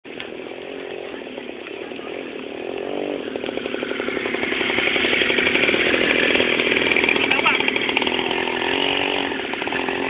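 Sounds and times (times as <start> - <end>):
small engine running: 0.1 - 10.0.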